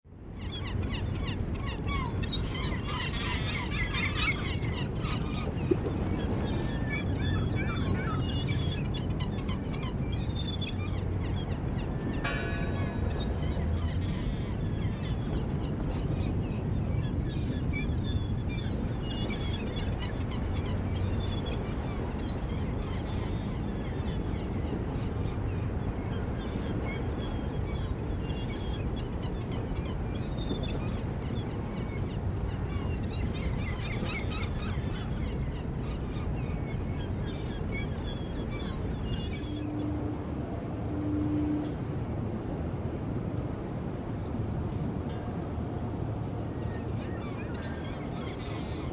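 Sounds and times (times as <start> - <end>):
gulls calling: 9.9 - 15.9.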